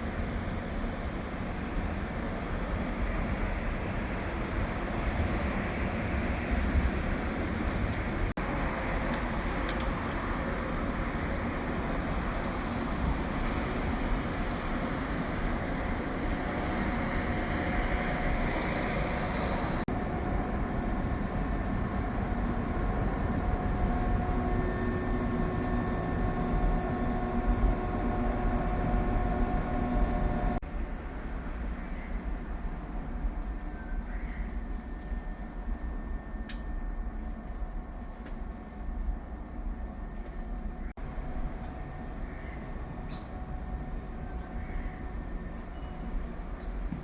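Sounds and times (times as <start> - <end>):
electric train running: 8.5 - 30.6.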